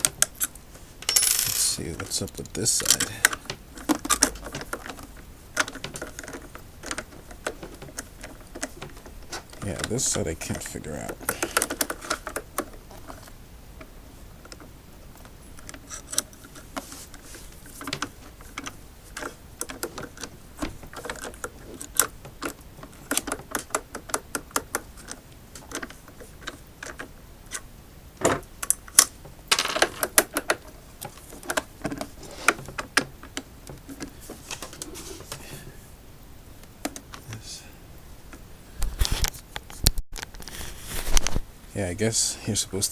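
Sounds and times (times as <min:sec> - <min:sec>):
clicks taps and knocks of handling: 0:02.0 - 0:27.6, 0:28.2 - 0:35.4, 0:36.6 - 0:37.4.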